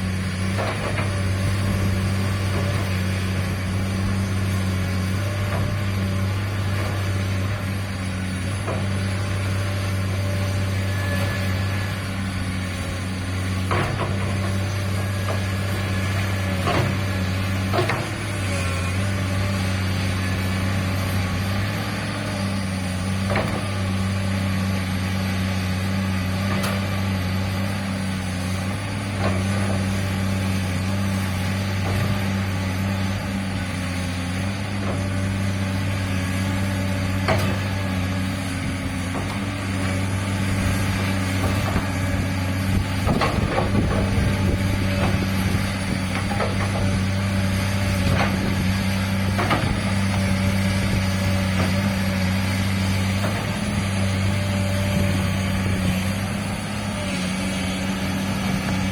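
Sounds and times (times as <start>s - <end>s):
excavator diesel engine running: 0.0s - 58.9s
sharp knocks of machine working: 38.9s - 52.0s.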